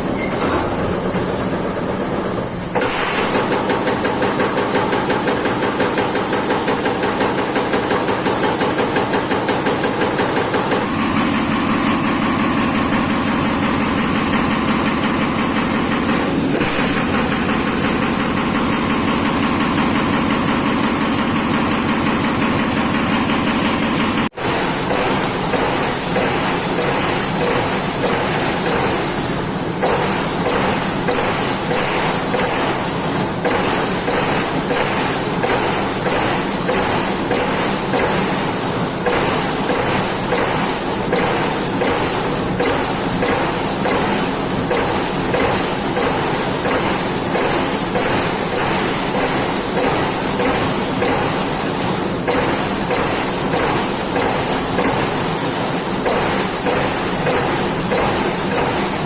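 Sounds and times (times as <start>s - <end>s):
machine high whine and hum: 0.0s - 59.0s
punch press punching sheet metal: 0.0s - 59.0s.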